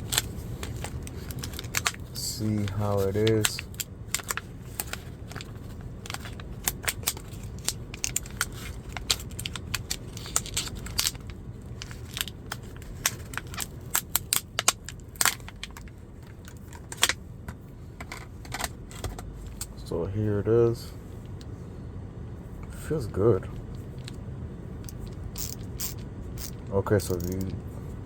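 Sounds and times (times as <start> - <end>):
packaging crinkling and tearing: 0.0 - 2.0, 2.6 - 15.9.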